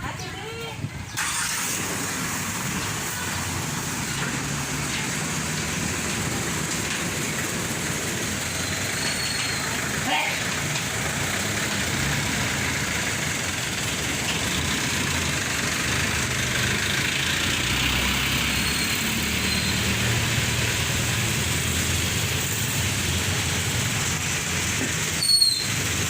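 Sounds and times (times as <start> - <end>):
vehicle engine running: 0.1 - 26.0.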